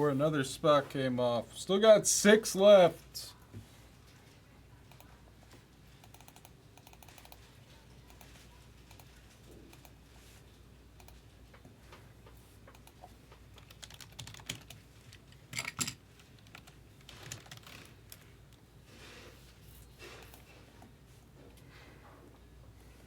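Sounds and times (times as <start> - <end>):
typing on computer keyboard: 6.0 - 7.5, 12.7 - 18.2.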